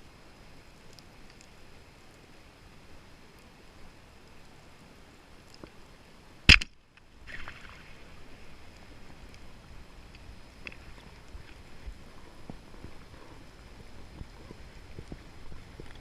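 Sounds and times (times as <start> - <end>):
faint clicks: 0.6 - 2.4, 4.2 - 5.8, 8.6 - 16.0.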